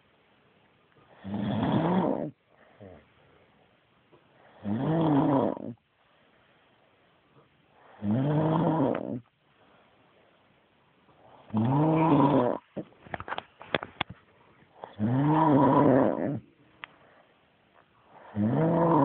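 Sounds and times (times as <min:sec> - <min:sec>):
loud rhythmic snoring: 0:01.1 - 0:03.1, 0:04.4 - 0:05.8, 0:07.8 - 0:09.3, 0:11.3 - 0:12.8, 0:14.8 - 0:16.5, 0:18.1 - 0:19.0.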